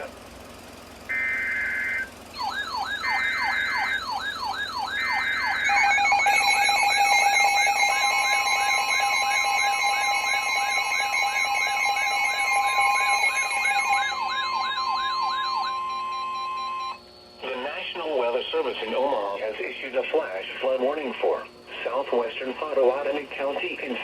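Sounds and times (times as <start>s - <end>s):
data header tones: 1.1s - 17.0s
steady alert tones: 1.1s - 17.0s
siren sweeping up and down: 1.1s - 17.1s.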